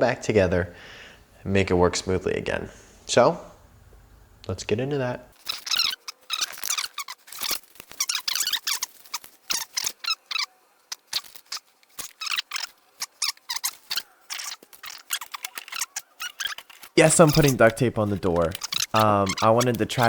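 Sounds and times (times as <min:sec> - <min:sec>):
duct tape ripping off roll: 0:05.4 - 0:20.0.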